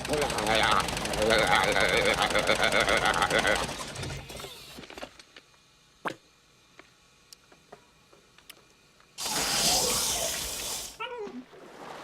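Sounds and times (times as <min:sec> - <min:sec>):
water gushing: 0:09.2 - 0:12.0.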